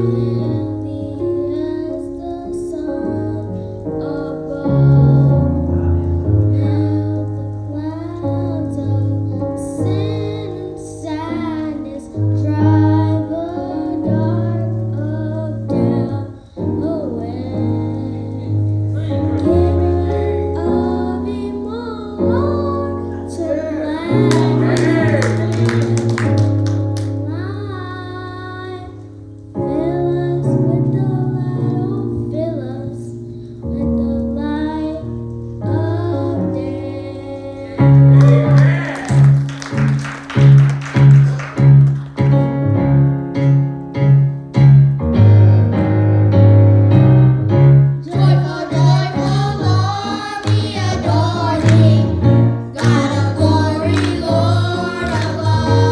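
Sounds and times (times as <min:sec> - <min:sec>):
young female voice singing: 0:00.0 - 0:05.5, 0:06.5 - 0:26.0, 0:29.6 - 0:38.6, 0:48.0 - 0:55.9
instrumental accompaniment with bass: 0:00.0 - 0:55.9.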